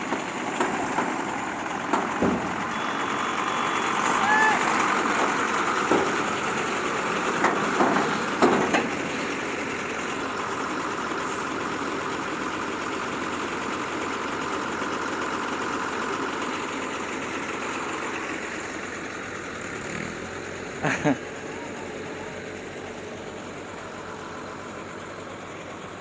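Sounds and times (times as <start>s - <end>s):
heavy vehicle engine running: 0.0s - 26.0s.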